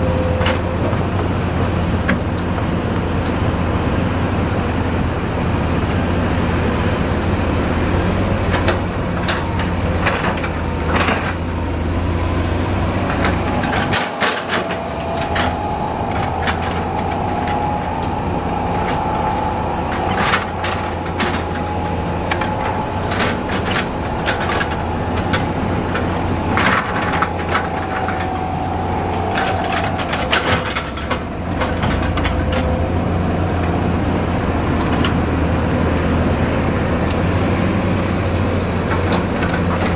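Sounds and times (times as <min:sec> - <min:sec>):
heavy diesel machinery running: 0:00.0 - 0:39.9
steady high whine: 0:11.6 - 0:37.2.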